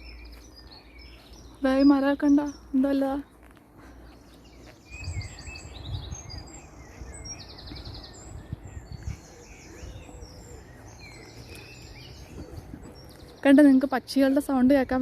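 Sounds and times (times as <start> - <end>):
songbirds singing and chirping: 0.0 - 15.0.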